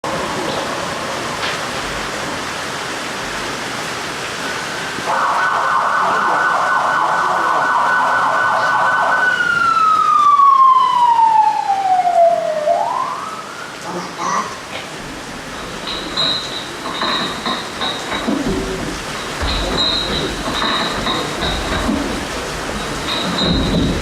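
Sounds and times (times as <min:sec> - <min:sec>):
siren wailing: 0:05.1 - 0:13.8.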